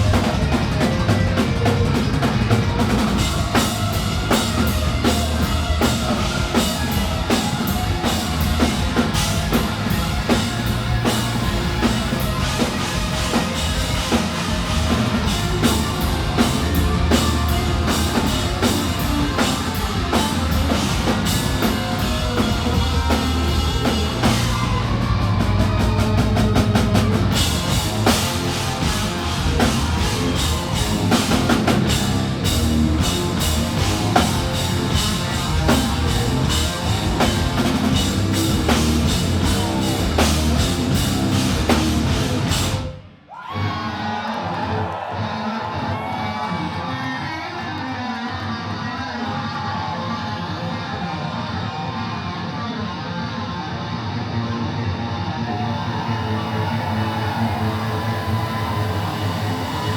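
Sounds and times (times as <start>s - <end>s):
drum kit: 0.0s - 43.1s, 56.8s - 59.9s
hard rock band playing: 0.0s - 43.2s, 45.2s - 59.9s.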